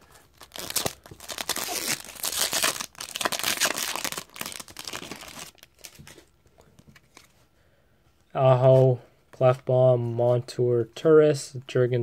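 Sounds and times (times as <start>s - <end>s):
foil wrapper crinkling and tearing: 0.3s - 6.1s.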